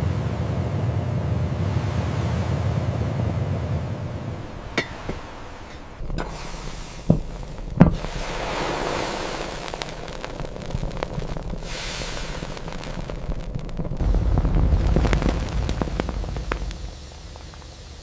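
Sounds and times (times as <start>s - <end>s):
steady rushing hiss: 0.0s - 18.0s
small rapid ticks: 7.2s - 14.0s.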